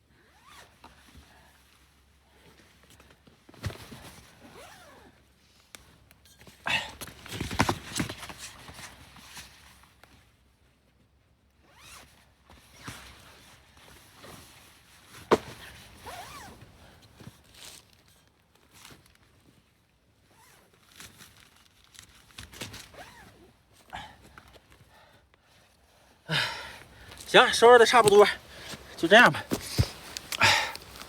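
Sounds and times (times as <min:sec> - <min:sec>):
camp gear rustling: 0:00.4 - 0:10.2, 0:11.6 - 0:31.0
zipper pulls: 0:04.4 - 0:05.1, 0:11.6 - 0:12.1, 0:15.3 - 0:16.7, 0:20.3 - 0:24.6, 0:27.9 - 0:31.0.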